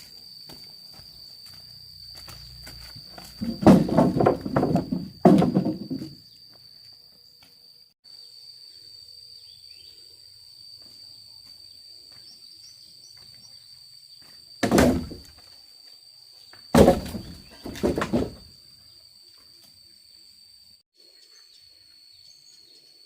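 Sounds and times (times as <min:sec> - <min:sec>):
high-pitched insect drone: 0:00.0 - 0:03.4
loud thuds: 0:03.3 - 0:06.2, 0:14.6 - 0:15.2, 0:16.8 - 0:18.5.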